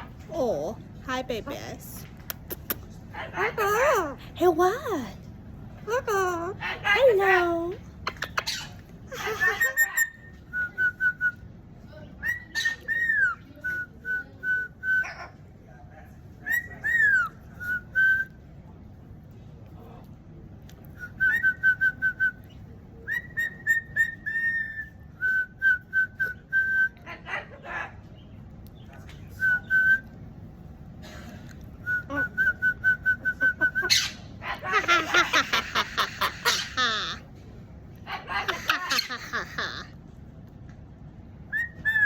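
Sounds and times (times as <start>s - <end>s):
pet bird whistling: 8.1s - 11.4s, 12.2s - 15.2s, 16.4s - 18.4s, 21.0s - 27.0s, 31.8s - 37.2s, 41.5s - 42.0s.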